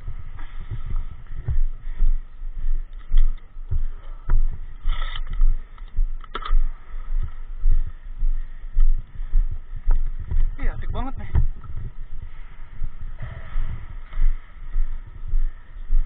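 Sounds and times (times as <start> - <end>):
footsteps and gear rubbing on microphone: 0.0 - 16.0
sharp clicks: 5.0 - 6.7.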